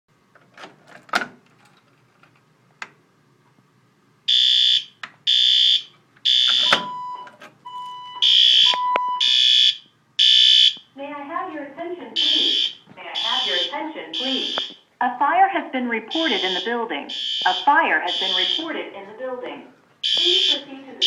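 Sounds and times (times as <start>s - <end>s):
pulsing fire alarm tone: 4.3s - 10.9s, 12.2s - 14.8s, 16.1s - 18.8s, 20.0s - 20.7s
faint low beeps: 6.4s - 9.3s.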